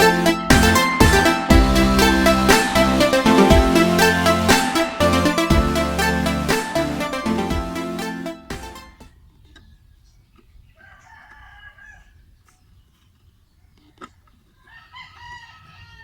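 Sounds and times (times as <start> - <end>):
rooster crowing: 10.8 - 12.2, 14.7 - 16.0.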